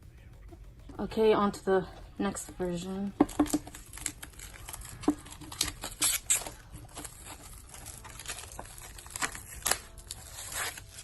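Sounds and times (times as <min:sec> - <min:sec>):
plastic and paper rustling: 0:02.3 - 0:11.0.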